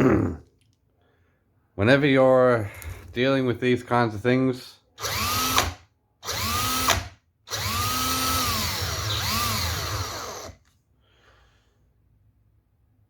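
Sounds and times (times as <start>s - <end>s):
cordless drill motor whining: 5.0s - 10.6s.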